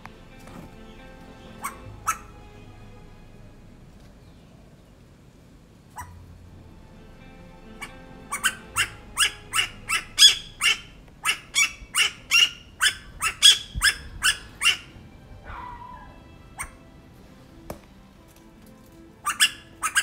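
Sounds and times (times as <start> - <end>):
koel calling: 0.7 - 2.5, 7.6 - 16.8, 19.2 - 20.0.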